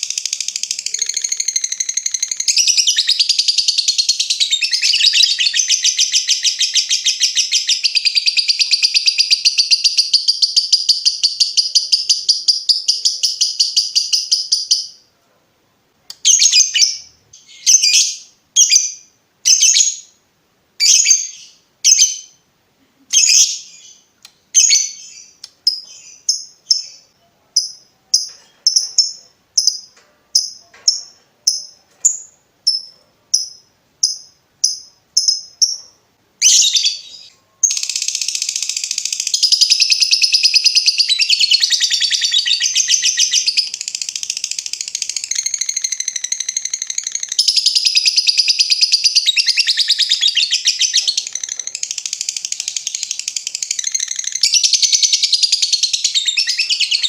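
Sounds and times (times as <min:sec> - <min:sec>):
lovebird sharp chirps: 0:00.0 - 0:15.0, 0:16.1 - 0:20.2, 0:20.8 - 0:22.4, 0:23.1 - 0:57.0
lovebird chattering trill: 0:24.6 - 0:57.0.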